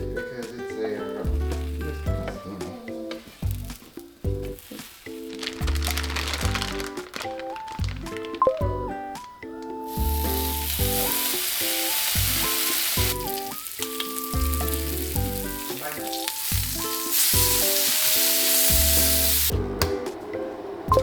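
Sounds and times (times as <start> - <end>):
background music: 0.0 - 21.0
food sizzling in frying pan: 9.9 - 19.5.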